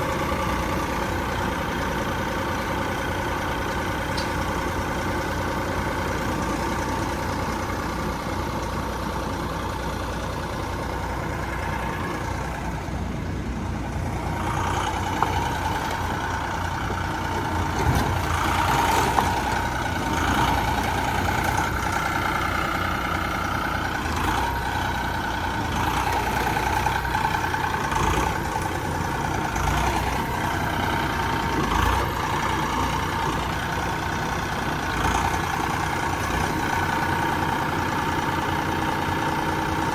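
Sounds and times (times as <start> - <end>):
stump grinder engine running: 13.8 - 39.9.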